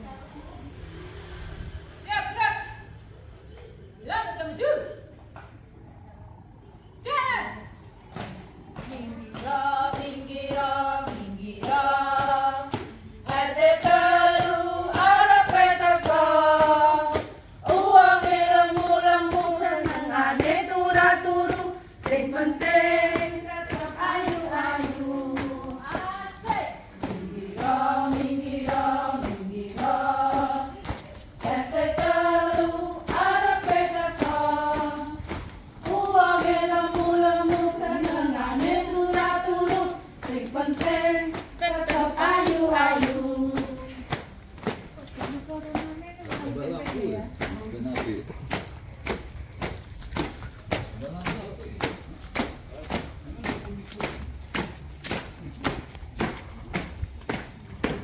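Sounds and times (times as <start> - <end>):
women singing in unison: 8.1 - 46.0
sharp taps and claps: 8.2 - 58.0.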